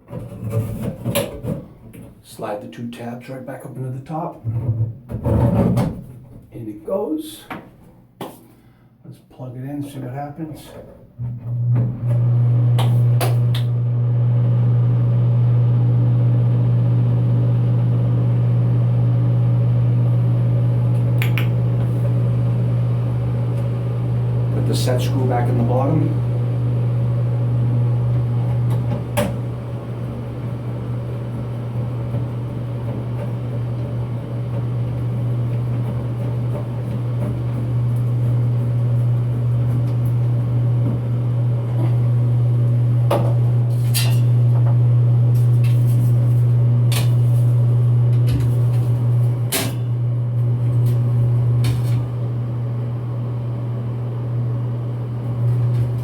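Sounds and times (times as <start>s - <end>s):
exhaust fan motor humming: 11.8s - 56.0s.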